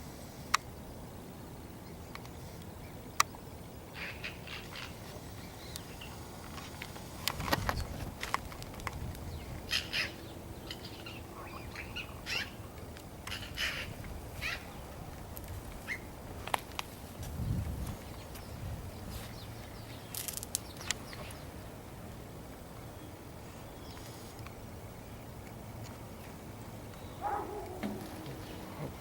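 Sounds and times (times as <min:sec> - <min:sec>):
harsh raspy bird calls: 0:03.9 - 0:05.1, 0:09.6 - 0:14.9, 0:27.1 - 0:29.0.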